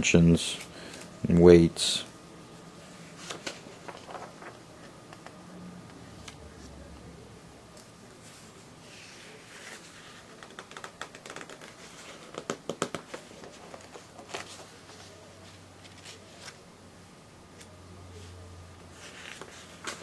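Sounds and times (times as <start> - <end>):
paper pages crinkling: 3.0 - 5.0, 7.8 - 16.6, 18.9 - 20.0.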